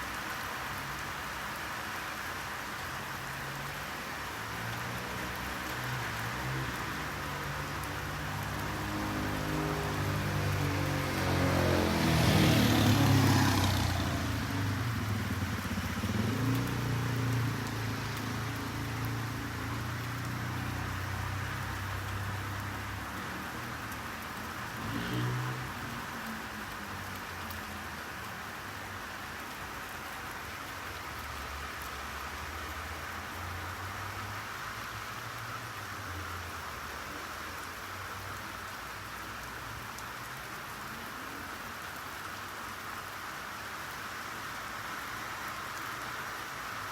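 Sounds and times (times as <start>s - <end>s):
steady rain hissing: 0.0s - 46.9s
passing vehicle rumble: 4.6s - 29.5s.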